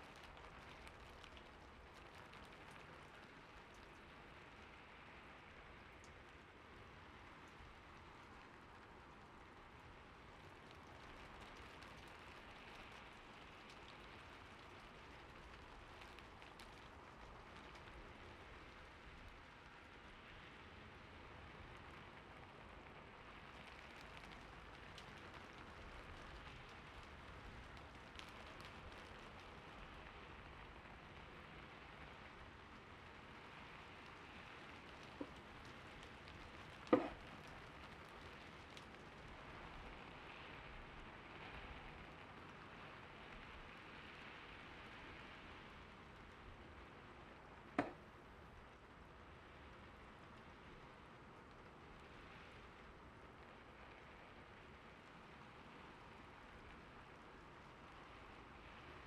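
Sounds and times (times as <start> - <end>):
gentle steady rain: 0.0 - 59.0
faint scattered clicks: 23.4 - 30.7.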